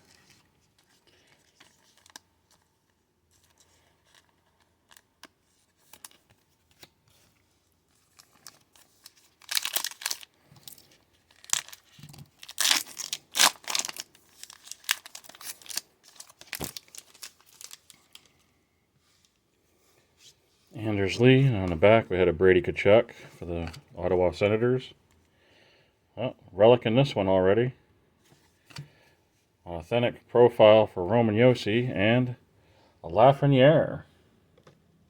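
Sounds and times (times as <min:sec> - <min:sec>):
wrapper crinkling: 0:00.0 - 0:18.4
foil pack tearing: 0:08.3 - 0:17.9.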